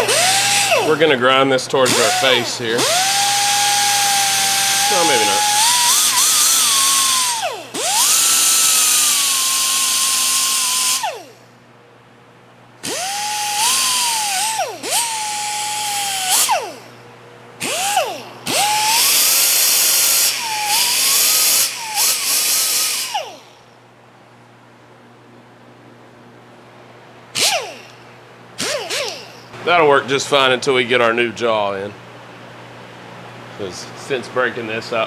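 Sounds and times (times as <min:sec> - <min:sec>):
grinder grinding steel: 0:00.0 - 0:11.2, 0:12.9 - 0:16.8, 0:17.6 - 0:23.5.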